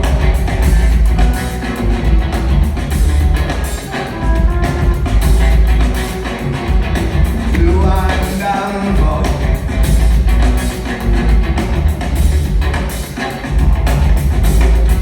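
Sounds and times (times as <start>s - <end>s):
heavy pulsing bass and drums: 0.0s - 15.0s
live rock band playing: 0.0s - 15.0s
person singing: 7.4s - 9.6s.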